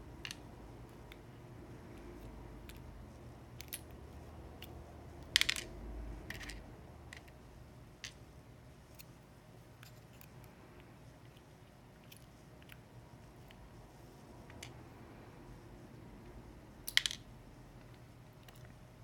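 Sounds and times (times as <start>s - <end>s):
small metal parts clicking: 3.6s - 3.9s, 4.6s - 5.7s, 16.9s - 17.3s.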